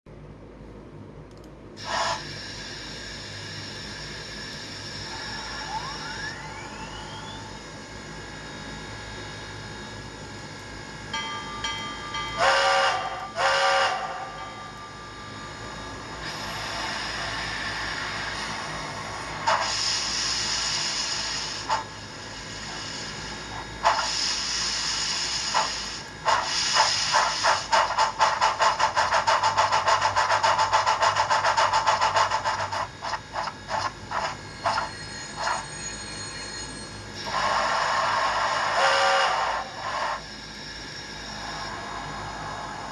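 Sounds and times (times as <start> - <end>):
steam locomotive chuffing: 1.8 - 7.4, 11.1 - 40.4
rising whine: 3.8 - 12.4, 13.0 - 42.9
steam whistle blasts: 12.3 - 14.9, 34.6 - 40.2
steam hiss: 16.2 - 40.2.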